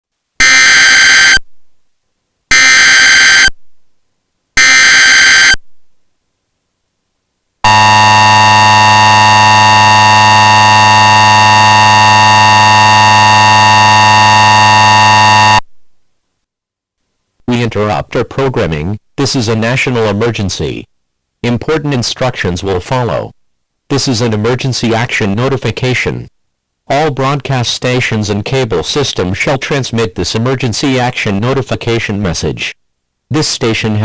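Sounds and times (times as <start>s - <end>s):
digital data screech bursts: 2.5s - 3.5s, 4.6s - 5.6s
two-tone alert signal: 7.7s - 15.6s.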